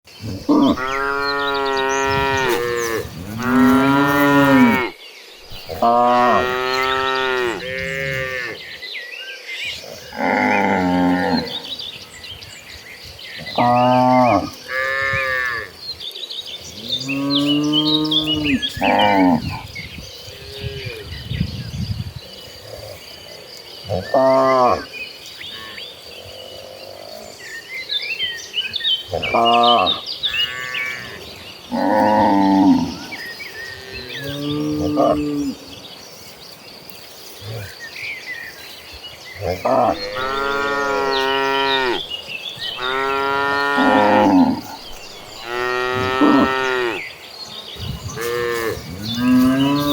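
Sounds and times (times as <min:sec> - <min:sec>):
cattle mooing: 0:00.4 - 0:04.9, 0:05.5 - 0:08.6, 0:39.5 - 0:42.1, 0:42.7 - 0:47.0.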